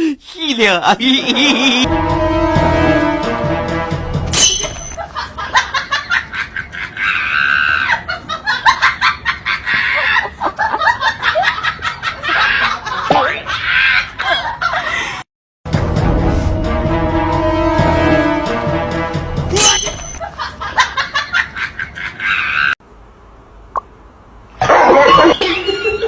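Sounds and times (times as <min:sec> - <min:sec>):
music: 0:01.9 - 0:04.4, 0:15.7 - 0:20.1
person laughing and shrieking: 0:06.8 - 0:08.2, 0:12.1 - 0:15.2, 0:22.0 - 0:22.8, 0:24.6 - 0:26.0.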